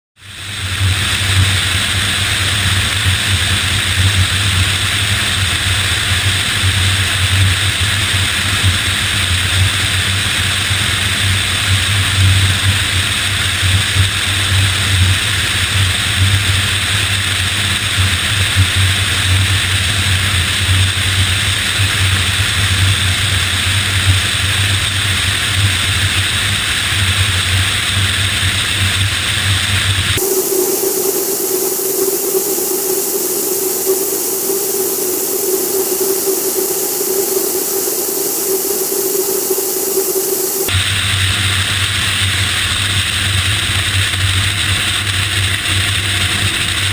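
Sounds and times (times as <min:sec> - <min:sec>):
jet aircraft engine and airflow: 0:30.2 - 0:40.8.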